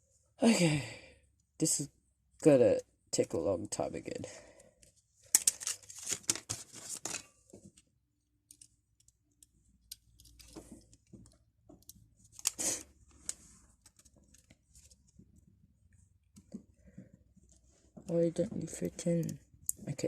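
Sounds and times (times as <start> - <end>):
small parts clicking: 8.4 - 12.6.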